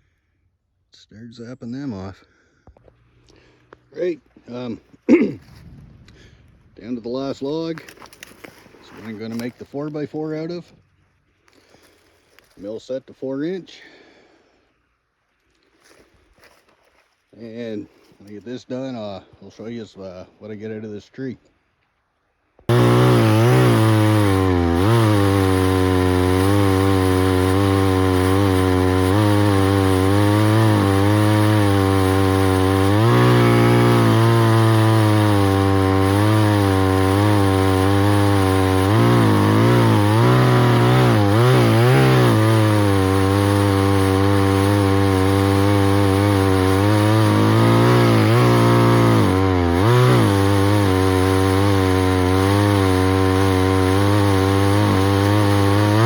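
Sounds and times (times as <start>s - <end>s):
chainsaw mill ripping a log: 7.3s - 10.7s, 22.7s - 56.0s.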